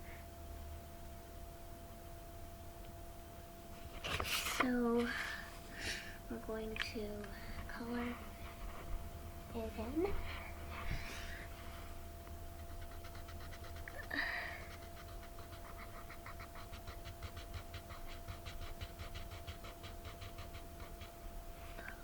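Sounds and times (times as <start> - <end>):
marker scribbling on paper: 12.6 - 21.2.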